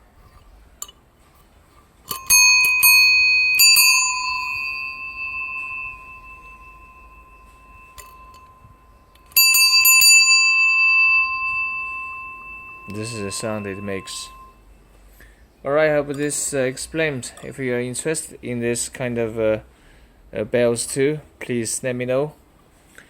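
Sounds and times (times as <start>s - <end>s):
bicycle bell ringing: 2.1s - 14.6s.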